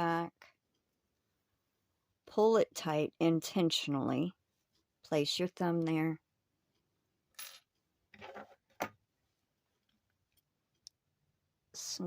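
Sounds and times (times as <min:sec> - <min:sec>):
tool rustling: 0:08.2 - 0:08.9.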